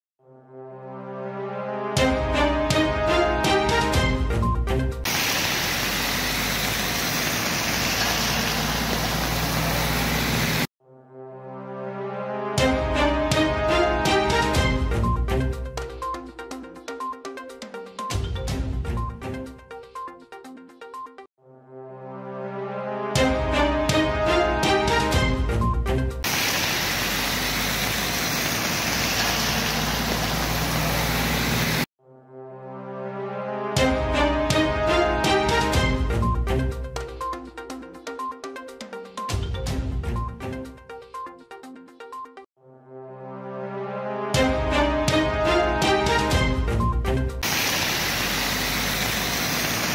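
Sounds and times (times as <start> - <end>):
news intro music: 0.3 - 5.4, 10.6 - 19.8, 21.5 - 26.7, 32.3 - 41.0, 42.7 - 47.9.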